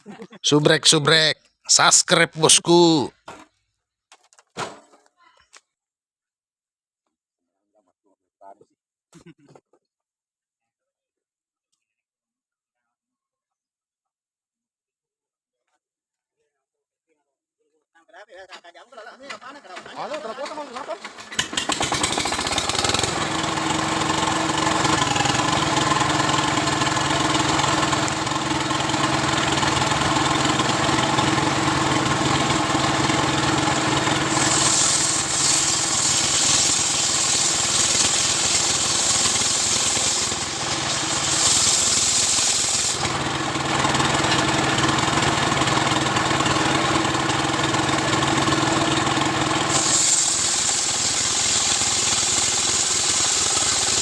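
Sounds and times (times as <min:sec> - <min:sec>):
chainsaw sawing wood: 0:21.4 - 0:54.0.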